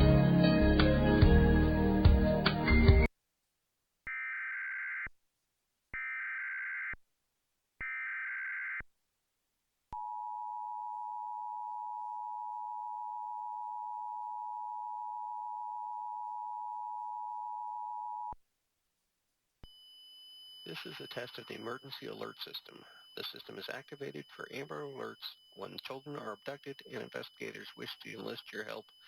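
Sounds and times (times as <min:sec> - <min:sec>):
two-tone attention signal: 0:20.6 - 0:29.0.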